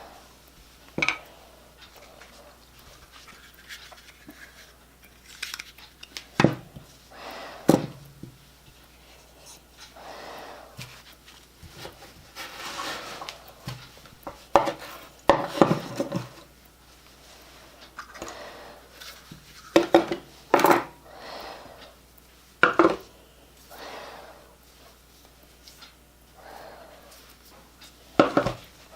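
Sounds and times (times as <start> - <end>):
rustling: 0.0 - 7.2, 10.7 - 18.2.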